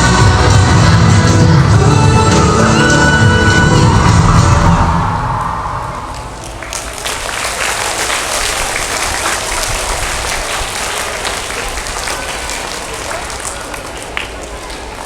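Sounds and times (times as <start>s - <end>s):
dance music: 0.0s - 6.4s
audience applauding: 3.7s - 15.0s.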